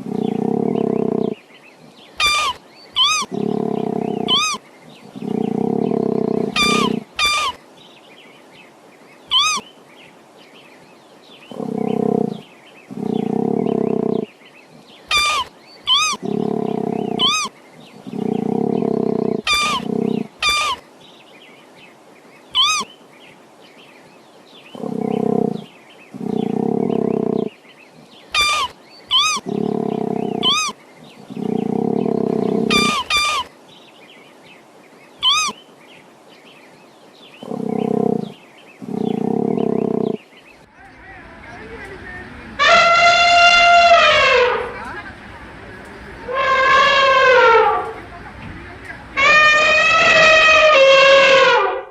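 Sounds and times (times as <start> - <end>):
deep rasping animal calls: 0.0 - 7.6, 9.3 - 9.7, 11.4 - 20.8, 22.5 - 22.9, 24.7 - 33.5, 35.2 - 35.6, 37.4 - 40.3, 41.9 - 45.3, 46.2 - 48.0, 49.1 - 51.9.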